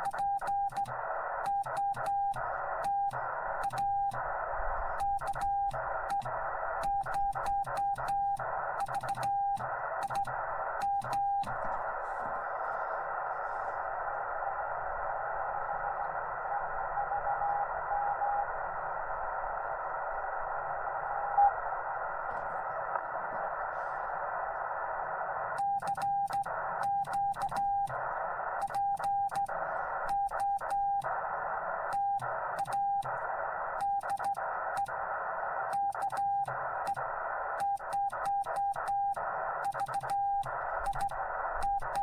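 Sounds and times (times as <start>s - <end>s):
radio band noise hiss: 0.0s - 42.0s.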